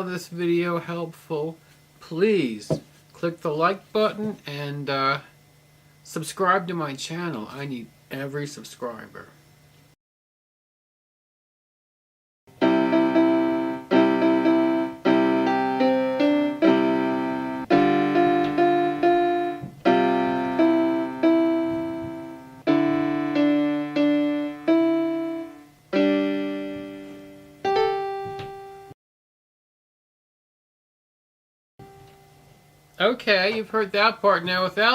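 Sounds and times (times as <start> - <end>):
keyboard piano chords: 12.5 - 29.0, 31.8 - 32.5.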